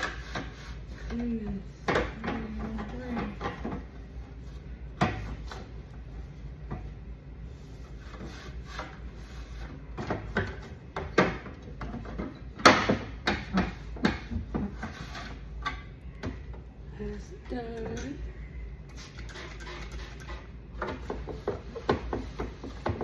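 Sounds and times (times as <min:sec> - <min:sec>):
refrigerator parts knocking and clattering: 0:09.8 - 0:16.6.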